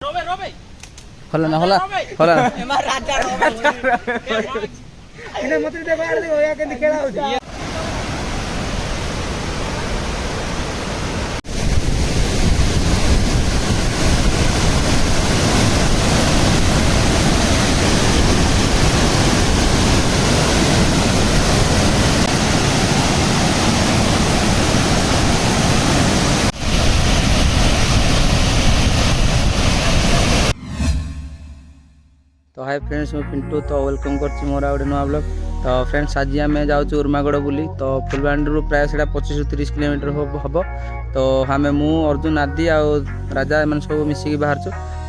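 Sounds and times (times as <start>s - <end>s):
waterfall rushing: 7.4s - 30.6s.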